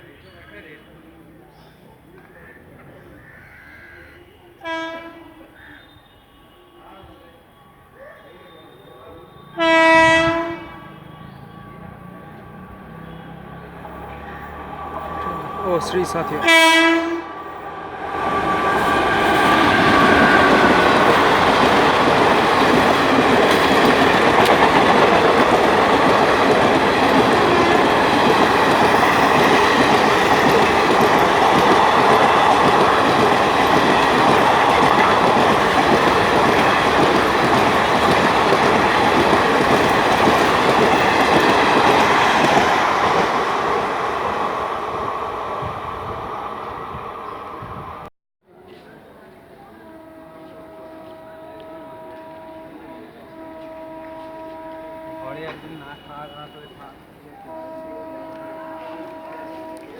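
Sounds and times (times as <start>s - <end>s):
train horn: 4.6s - 46.3s, 49.5s - 59.9s
train wheels rushing on rails: 9.6s - 48.1s.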